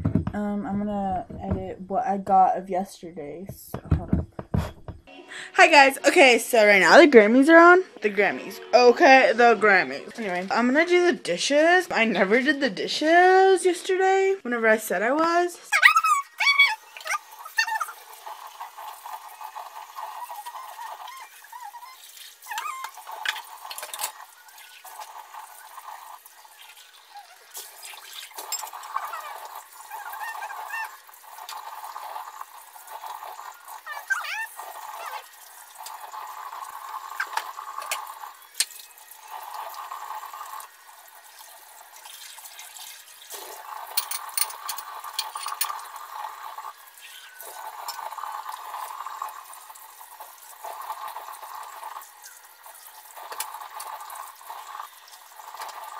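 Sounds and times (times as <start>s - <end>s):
dishes clinking and knocking: 0.0s - 0.4s, 3.7s - 5.1s, 28.4s - 29.0s, 43.9s - 45.8s
tap water running: 5.6s - 55.9s.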